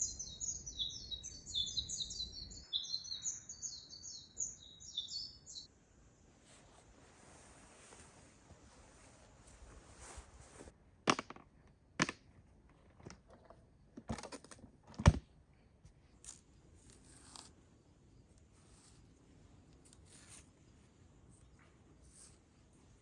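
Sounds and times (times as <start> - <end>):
light scraping and rustling: 6.4 - 10.8.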